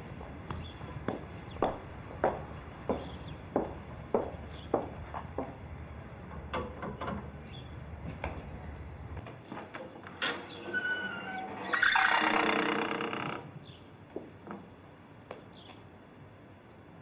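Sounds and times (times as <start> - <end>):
footsteps on hard floor: 0.2 - 5.6.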